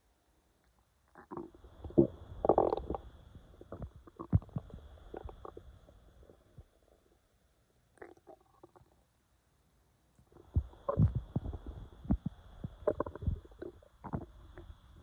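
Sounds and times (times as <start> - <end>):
stomach growling: 1.1 - 7.1, 7.9 - 9.0, 10.2 - 15.0.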